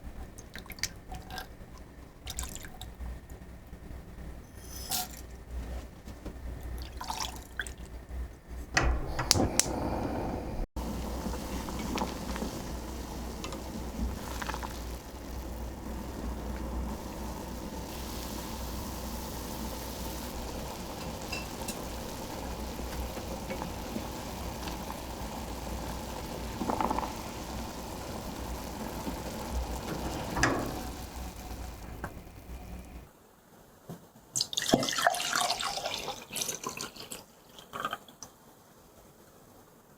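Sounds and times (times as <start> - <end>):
liquid pouring: 6.7 - 7.9, 10.8 - 33.1, 34.4 - 38.0.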